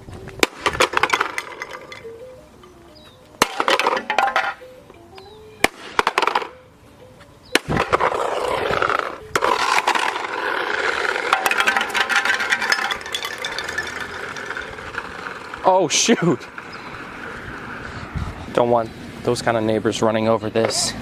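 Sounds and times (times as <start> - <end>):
plastic crunching and scraping: 7.6 - 15.6
plastic toy cracking and clattering: 9.4 - 15.6.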